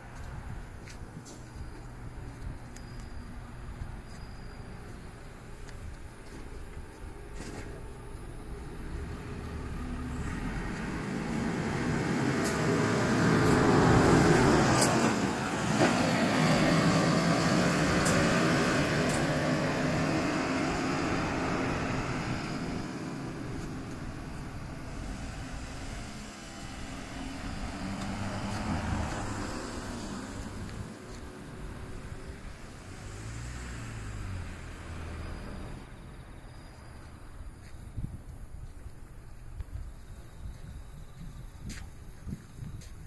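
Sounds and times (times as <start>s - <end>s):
vehicle passing by: 8.4s - 36.3s.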